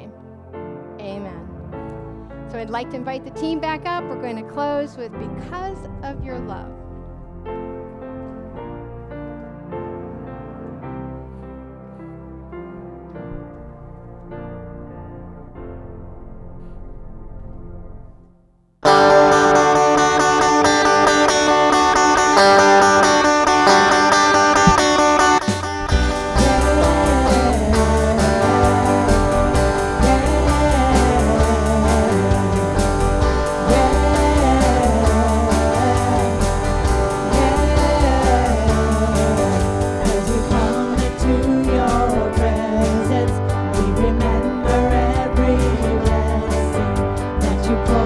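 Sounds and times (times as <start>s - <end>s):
worship band song: 18.8s - 48.0s
person singing: 18.9s - 48.0s.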